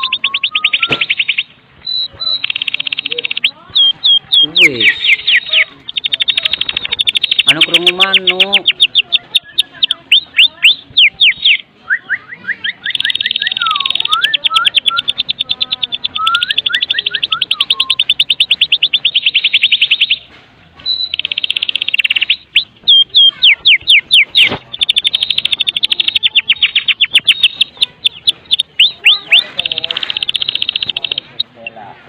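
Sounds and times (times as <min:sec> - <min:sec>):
songbird rattling call: 0:00.0 - 0:11.6, 0:12.7 - 0:31.8
bird whistled phrases: 0:00.0 - 0:31.8.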